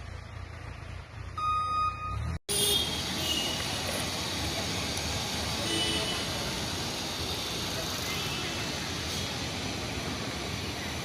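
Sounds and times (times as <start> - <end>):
street traffic noise: 0.0 - 11.0
short electronic tone: 1.4 - 2.4.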